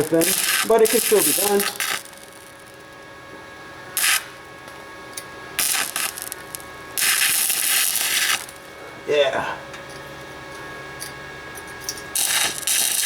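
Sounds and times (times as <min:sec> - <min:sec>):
arc welding crackle: 0:00.0 - 0:09.1, 0:11.8 - 0:13.0.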